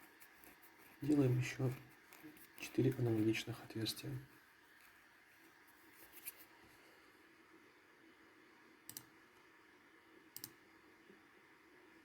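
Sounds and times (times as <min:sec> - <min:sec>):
faint steady hum: 0:00.0 - 0:12.0
computer mouse clicking: 0:08.9 - 0:09.2, 0:10.3 - 0:10.6.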